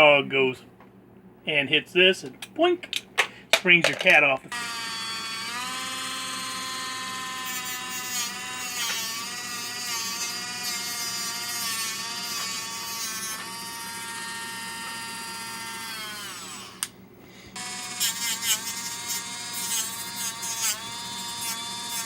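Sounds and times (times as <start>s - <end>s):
rotary tool cutting metal: 4.5s - 16.9s, 17.6s - 22.0s.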